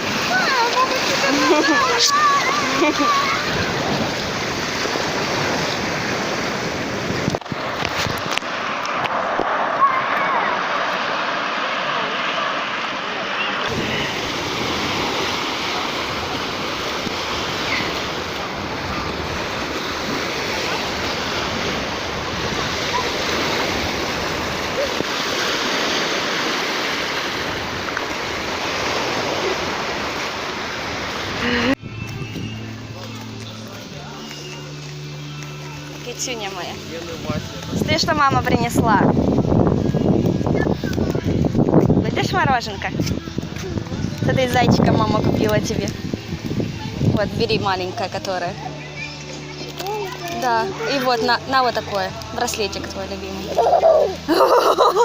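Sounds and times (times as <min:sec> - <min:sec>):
surf washing onto shore: 0:00.0 - 0:32.5.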